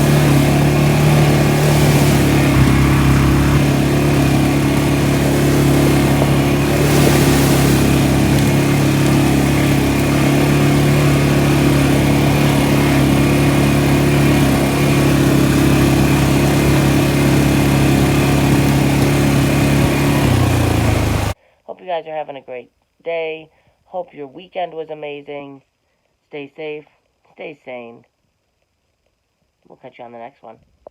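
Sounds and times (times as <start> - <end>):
atv engine running: 0.0 - 21.4.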